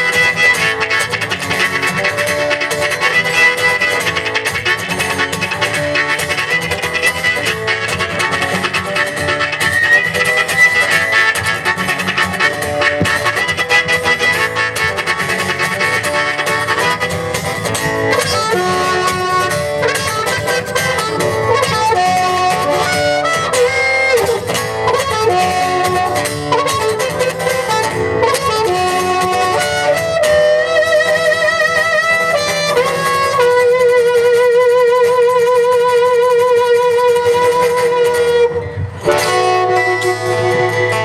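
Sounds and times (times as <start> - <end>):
guitar accompaniment: 0.0 - 41.0
lead melody line: 0.0 - 41.0.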